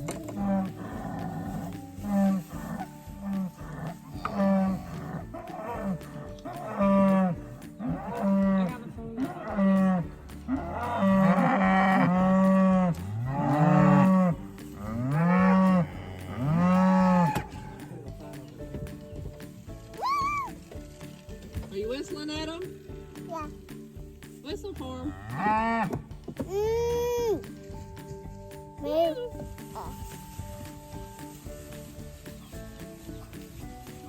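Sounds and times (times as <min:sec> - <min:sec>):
cattle mooing: 0:00.1 - 0:17.8, 0:25.1 - 0:26.0.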